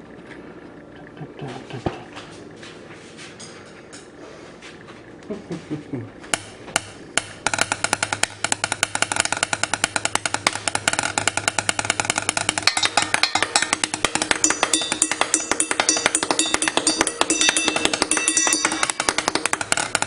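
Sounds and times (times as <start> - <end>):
chopsticks drumming on pots: 6.3 - 20.0.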